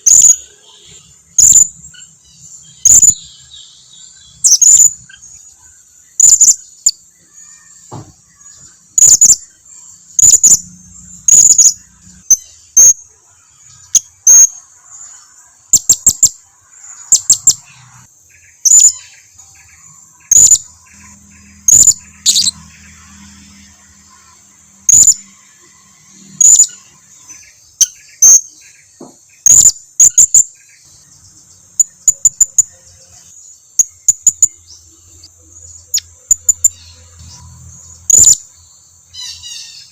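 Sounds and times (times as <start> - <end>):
high-pitched parrot chirps: 0.0 - 5.4, 6.2 - 9.5, 10.2 - 13.0, 13.8 - 14.6, 15.7 - 16.4, 17.1 - 17.7, 18.6 - 19.2, 20.2 - 23.4, 24.9 - 25.4, 26.4 - 27.0, 27.8 - 28.5, 29.4 - 30.5, 31.7 - 34.6, 35.9 - 38.5, 39.1 - 39.9.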